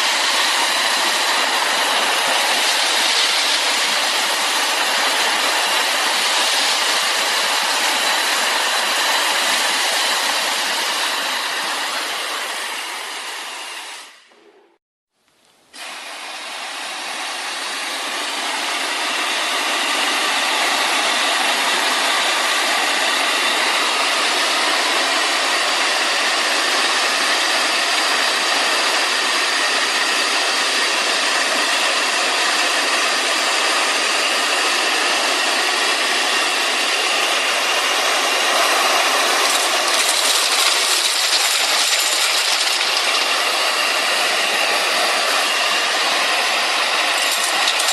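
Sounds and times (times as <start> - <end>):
vacuum cleaner air rushing: 0.0 - 14.8, 15.7 - 47.9.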